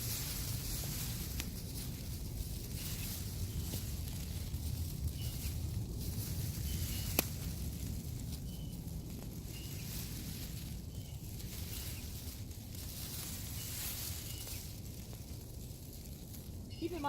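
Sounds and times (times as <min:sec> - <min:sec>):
low rumble and hiss: 0:00.0 - 0:17.0
bird chirping: 0:06.6 - 0:07.3, 0:08.4 - 0:08.8
sharp snap: 0:07.1 - 0:07.4.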